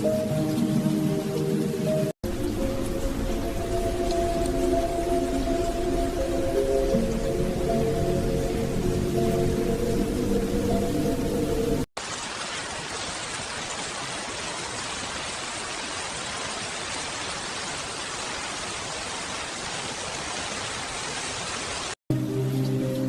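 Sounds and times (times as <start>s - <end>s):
soft music with low tones: 0.0s - 11.9s, 22.1s - 23.0s
steady rain hiss: 0.0s - 23.0s.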